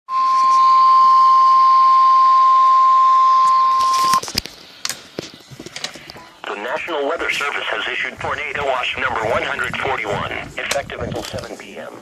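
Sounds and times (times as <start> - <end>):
alarm tone beep: 0.1 - 4.2
faint radio static: 3.8 - 12.0.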